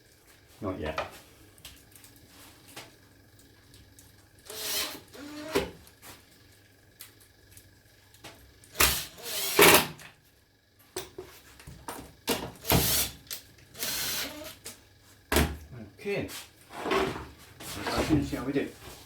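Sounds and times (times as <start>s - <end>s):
power drill running in bursts: 4.4s - 5.6s, 8.8s - 10.0s, 12.6s - 14.6s.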